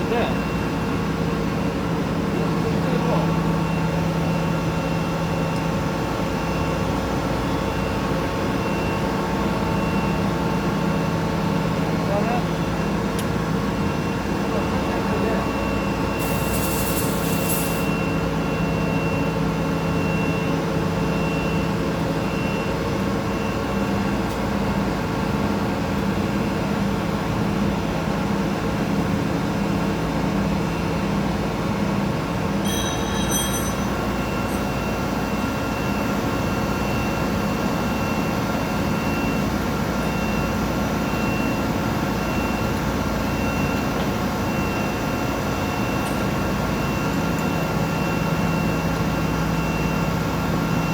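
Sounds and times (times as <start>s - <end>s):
industrial machine humming: 0.0s - 50.9s
faint pulsing high tone: 32.7s - 36.0s.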